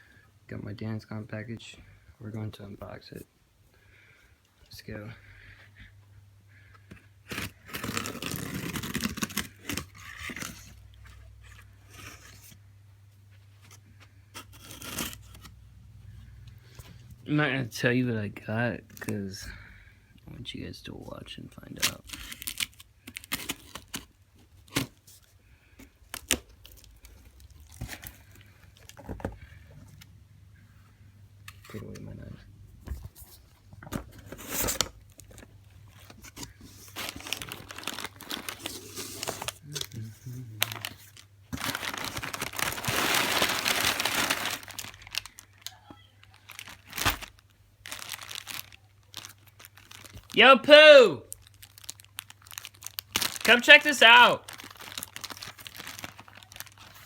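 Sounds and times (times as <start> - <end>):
tape tearing: 7.2 - 10.8, 14.4 - 15.5, 46.6 - 50.4
packing material crinkling: 7.2 - 12.5, 21.8 - 25.3, 26.1 - 29.1, 34.3 - 50.6, 51.3 - 57.0
knife cutting packing tape: 7.3 - 10.7, 14.4 - 15.4
cardboard crackling and scraping: 7.3 - 12.6, 32.8 - 45.6, 46.5 - 50.3.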